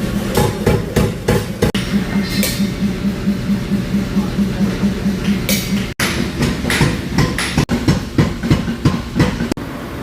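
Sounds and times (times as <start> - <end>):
hammer striking metal on anvil: 5.2 - 9.6.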